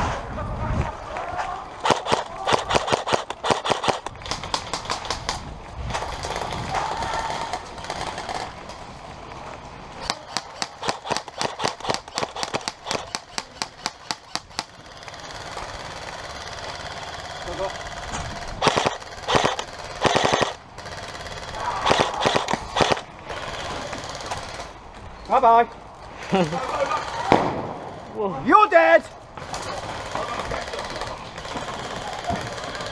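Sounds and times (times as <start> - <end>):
airsoft guns firing: 1.8 - 8.6, 10.0 - 24.7, 26.9 - 28.1, 29.4 - 32.9.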